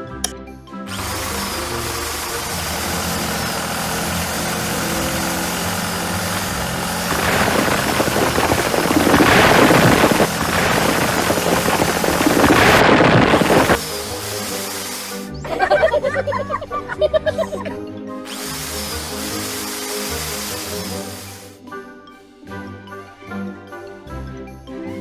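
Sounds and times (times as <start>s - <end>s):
vehicle engine running: 0.9s - 15.6s
heavy rattling rumble: 1.8s - 13.8s.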